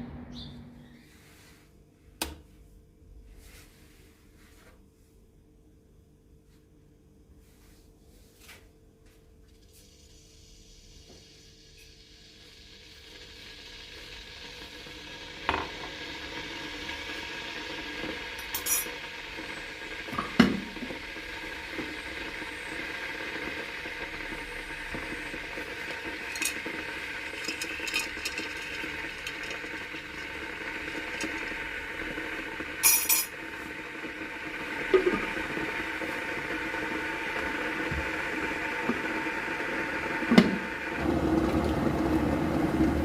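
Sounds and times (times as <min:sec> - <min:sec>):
utensils and dishes clinking: 0:18.4 - 0:19.0, 0:26.3 - 0:26.7, 0:27.4 - 0:29.7, 0:32.8 - 0:33.4.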